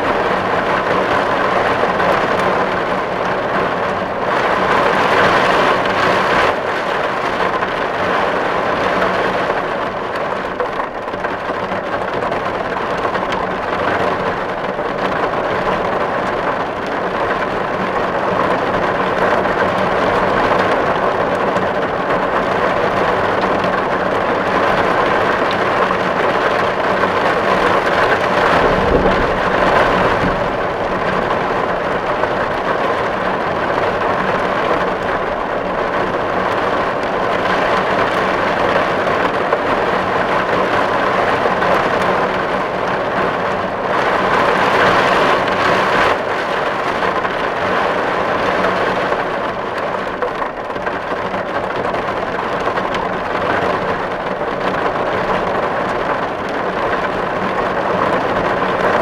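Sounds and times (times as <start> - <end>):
rain on a tin roof: 0.0 - 59.0
low rumble: 27.5 - 33.2.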